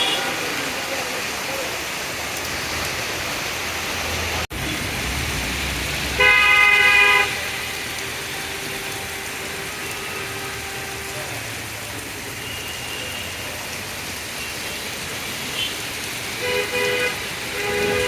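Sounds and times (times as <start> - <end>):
heavy rain: 0.0 - 18.0
vehicle horn: 6.2 - 7.6, 16.4 - 18.0.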